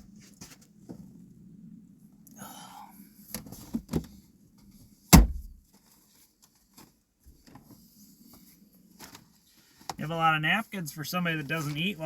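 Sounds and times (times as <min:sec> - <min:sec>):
loud thump: 0:05.1 - 0:05.6
sharp clicks in a car: 0:05.2 - 0:05.6.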